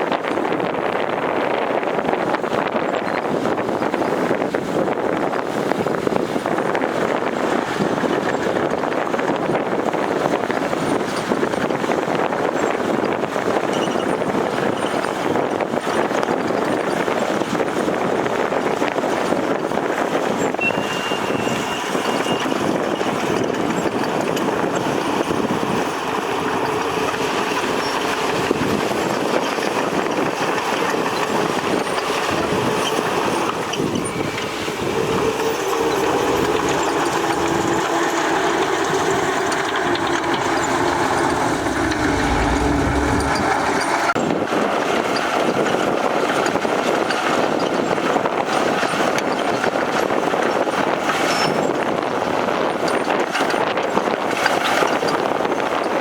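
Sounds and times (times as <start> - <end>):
heavy diesel machinery working: 19.9 - 46.4
steady engine hum: 20.4 - 44.9.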